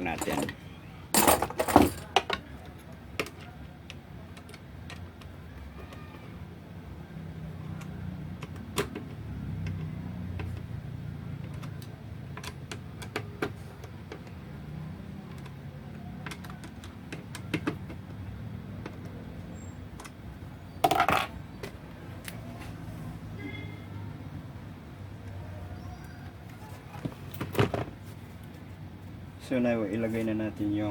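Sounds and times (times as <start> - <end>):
metal parts clicking and tapping: 0.1 - 6.3, 7.7 - 14.4, 15.3 - 19.2.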